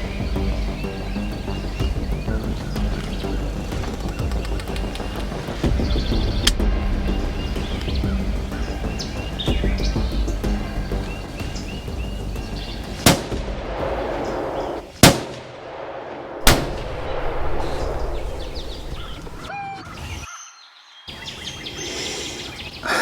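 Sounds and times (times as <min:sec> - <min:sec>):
rifle shots with echo: 0:13.0 - 0:19.5.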